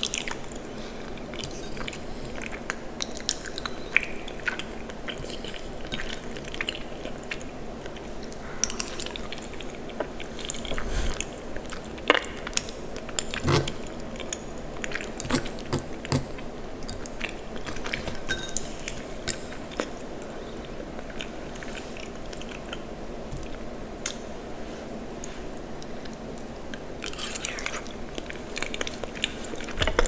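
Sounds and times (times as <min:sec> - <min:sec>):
steady low hum: 0:06.9 - 0:12.1.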